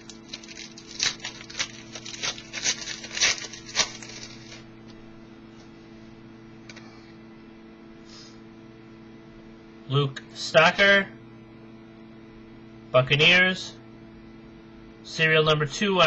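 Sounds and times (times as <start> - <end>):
foil wrapper tearing and crinkling: 0.0 - 4.7
low electrical hum: 0.0 - 16.0.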